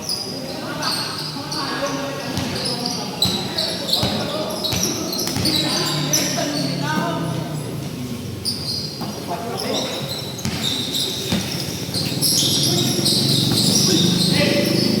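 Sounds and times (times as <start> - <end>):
shoes squeaking on floor: 0.0 - 15.0
voices: 0.0 - 15.0
basketball bouncing: 3.2 - 5.7, 10.4 - 15.0.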